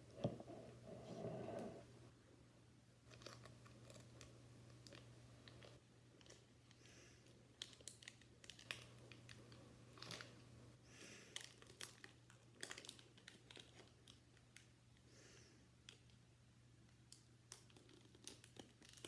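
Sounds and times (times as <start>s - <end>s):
foil wrappers crinkling: 3.1s - 10.4s, 11.2s - 14.7s, 17.5s - 19.0s.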